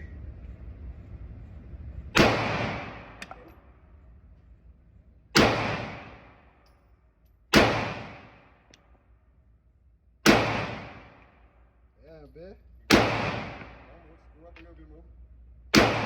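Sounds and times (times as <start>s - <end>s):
gunshots with long echo: 2.2s - 3.5s, 5.3s - 6.6s, 7.5s - 8.7s, 10.2s - 11.7s, 12.9s - 14.5s, 15.7s - 16.0s.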